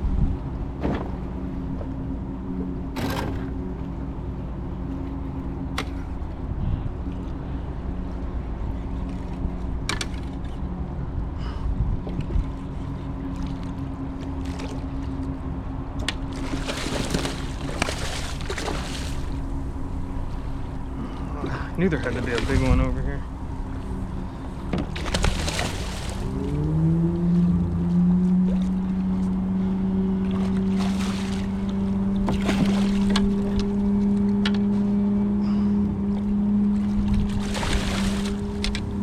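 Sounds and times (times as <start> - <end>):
low mechanical hum: 0.0 - 39.0
water lapping around kayak: 0.0 - 39.0
water splashing: 16.2 - 26.9, 30.1 - 33.8, 36.7 - 39.0.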